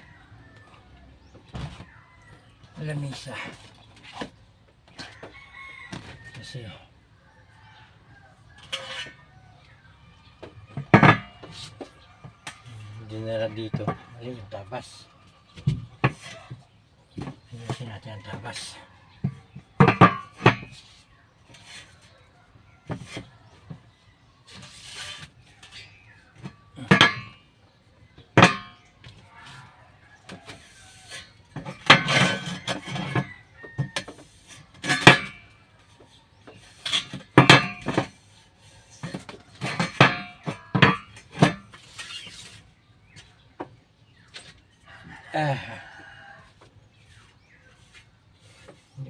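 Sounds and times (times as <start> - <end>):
metal clanks: 19.2 - 20.8, 24.5 - 27.5, 28.3 - 28.9, 30.5 - 35.6, 36.5 - 38.2, 39.0 - 42.5
knocks on steel frame: 28.4 - 28.8.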